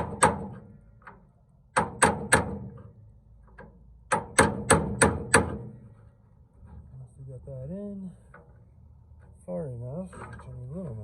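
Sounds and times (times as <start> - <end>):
hammer striking metal punch: 1.7 - 2.8, 4.1 - 5.8.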